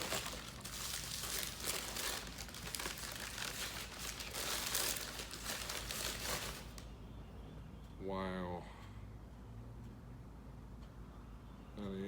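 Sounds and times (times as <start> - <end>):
paper crinkling and crumpling: 0.0 - 6.8.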